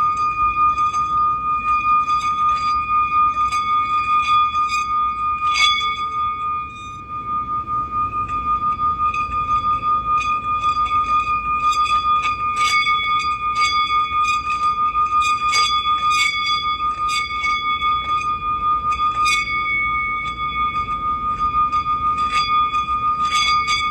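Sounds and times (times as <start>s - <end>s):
singing bowl ringing: 0.0s - 23.9s.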